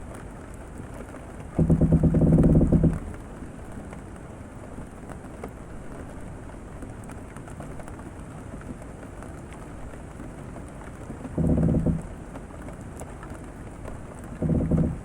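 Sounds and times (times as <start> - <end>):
steady rain falling: 0.0 - 15.0
drops ticking on a surface: 1.4 - 4.0, 10.8 - 15.0.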